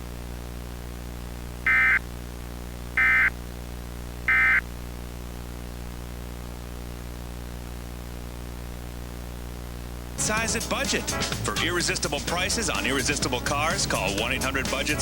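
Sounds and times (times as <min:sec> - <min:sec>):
electrical hum and hiss: 0:00.0 - 0:10.3
buzzing digital data tones: 0:01.6 - 0:02.1, 0:03.0 - 0:03.4, 0:04.3 - 0:04.7.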